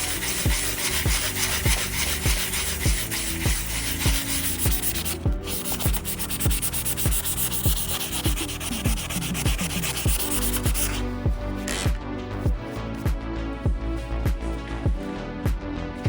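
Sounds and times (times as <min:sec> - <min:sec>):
sandpaper scrubbing metal: 0:00.0 - 0:11.0
electronic music with kick drum: 0:00.4 - 0:15.7.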